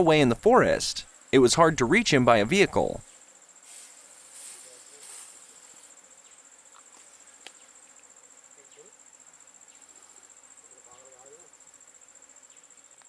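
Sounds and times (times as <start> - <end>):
insect trilling: 0.0 - 13.0
soft hissing: 2.8 - 13.0.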